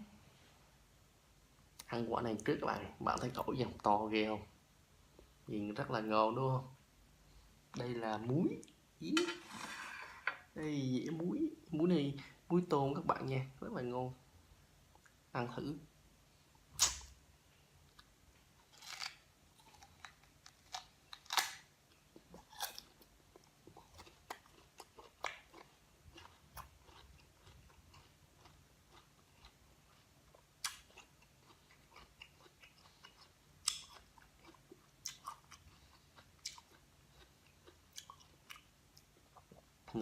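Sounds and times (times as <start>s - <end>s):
crunchy biting and chewing: 18.6s - 38.7s.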